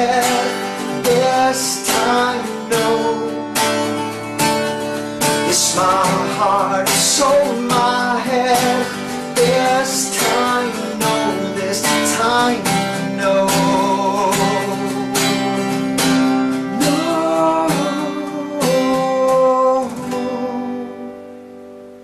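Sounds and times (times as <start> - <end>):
acoustic guitar strumming: 0.0 - 22.0.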